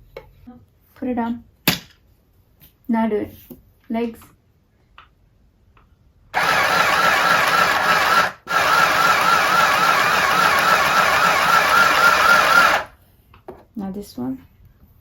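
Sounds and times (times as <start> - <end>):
sewing machine stitching: 6.4 - 13.0.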